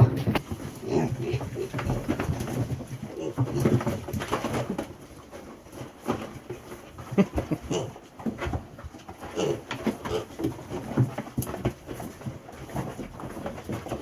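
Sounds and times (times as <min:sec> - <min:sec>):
piglets grunting: 0:00.0 - 0:02.2, 0:03.0 - 0:03.8, 0:07.1 - 0:08.1, 0:09.2 - 0:10.4.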